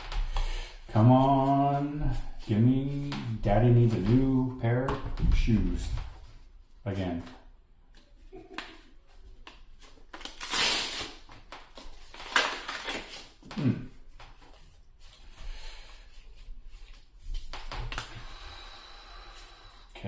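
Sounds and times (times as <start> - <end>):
foil pack crinkling: 10.1 - 13.4.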